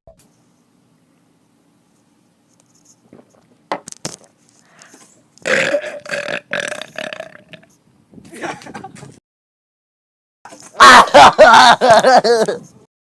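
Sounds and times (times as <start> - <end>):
loud long belch: 5.4 - 7.6.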